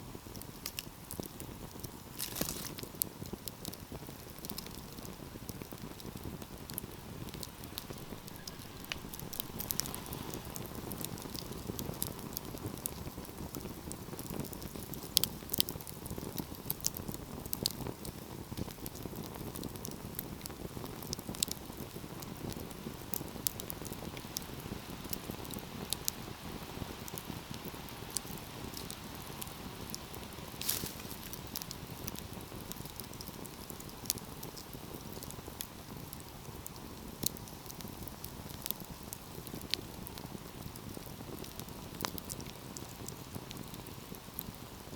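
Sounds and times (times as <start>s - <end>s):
fire crackling and popping: 0.0s - 44.9s
fire flames rushing: 3.7s - 16.3s, 30.0s - 35.3s.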